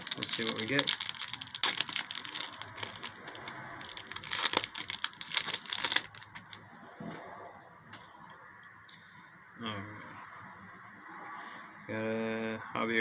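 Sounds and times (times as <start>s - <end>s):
card pack wrapper tearing and crinkling: 0.0s - 6.6s.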